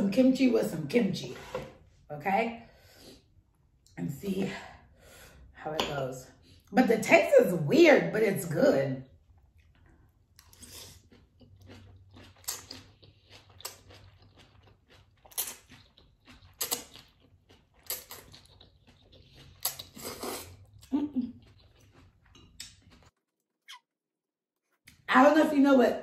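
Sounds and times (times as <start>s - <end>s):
person chewing crunchy food: 9.2s - 23.2s.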